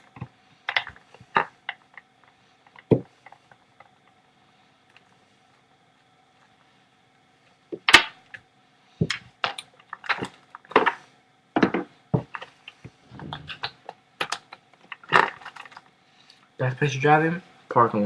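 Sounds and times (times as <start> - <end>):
faint steady hum: 0.0 - 18.0
hard objects knocking and clicking: 11.6 - 12.5.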